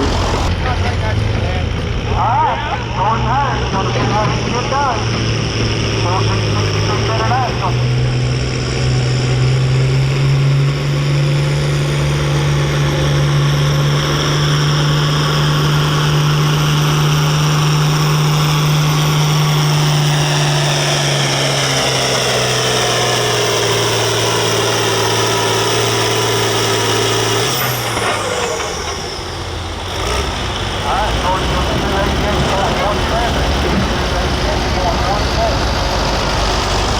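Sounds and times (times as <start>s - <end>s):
diesel tractor engine under load: 0.0s - 36.9s.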